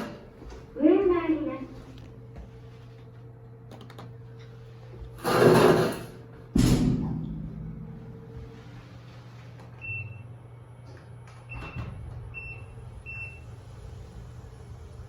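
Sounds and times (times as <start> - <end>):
elevator humming: 0.0 - 15.0.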